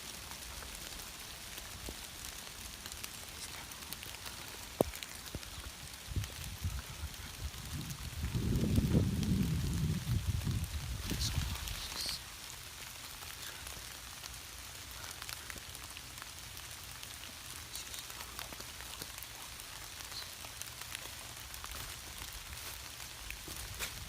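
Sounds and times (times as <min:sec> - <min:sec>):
light rain hiss: 0:00.0 - 0:24.0
single raindrops ticking: 0:00.0 - 0:24.0.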